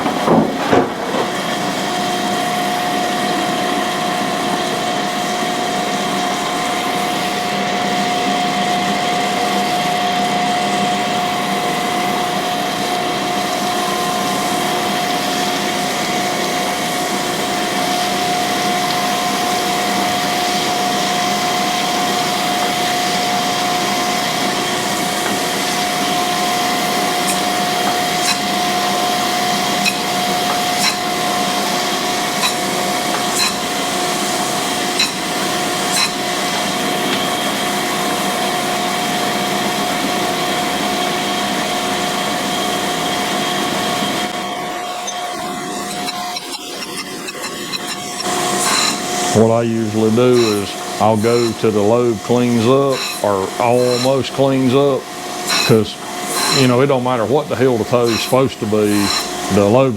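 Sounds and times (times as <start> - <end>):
grinding machine whine: 0.0 - 59.9
coolant spray hiss: 48.3 - 59.8.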